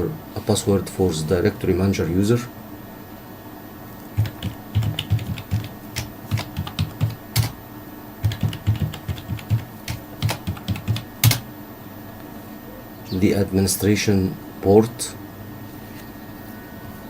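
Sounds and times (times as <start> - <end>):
typing on computer keyboard: 4.2 - 7.6, 8.2 - 11.5.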